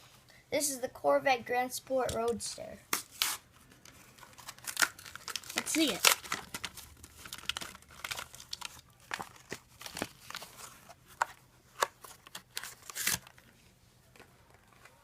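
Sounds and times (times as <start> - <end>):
plastic packaging crinkling and tearing: 2.9 - 13.5.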